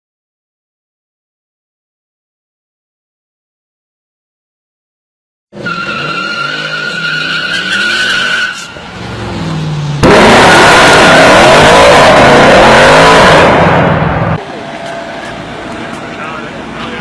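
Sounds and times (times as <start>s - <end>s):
car engine and exhaust whine: 5.6s - 17.0s
car full-throttle acceleration: 5.6s - 17.0s.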